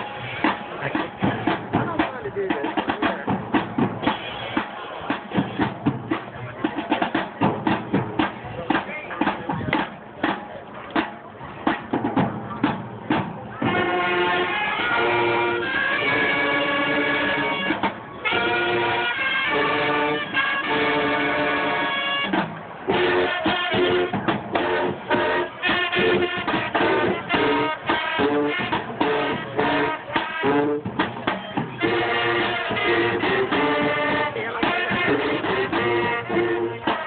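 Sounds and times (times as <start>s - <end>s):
music with held and choppy notes: 13.6s - 37.0s.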